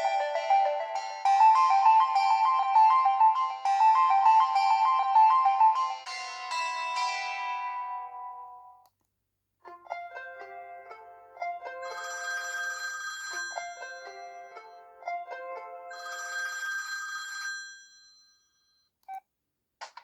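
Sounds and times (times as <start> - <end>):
phone ringtone melody: 0.0 - 6.2, 11.8 - 14.8, 15.9 - 18.8.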